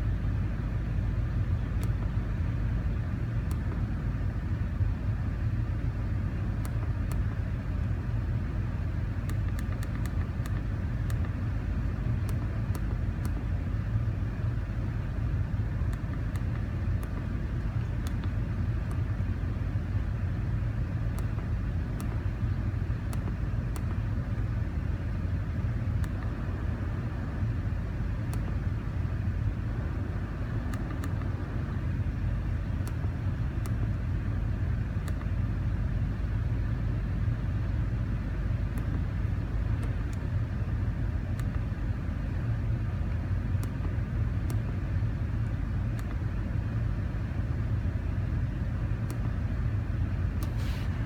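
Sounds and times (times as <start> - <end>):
faint light clicks: 1.7 - 2.3, 6.5 - 8.0, 9.2 - 14.1, 15.1 - 19.9, 21.0 - 24.5, 25.9 - 35.5, 37.6 - 46.6, 48.8 - 49.4, 50.3 - 51.0.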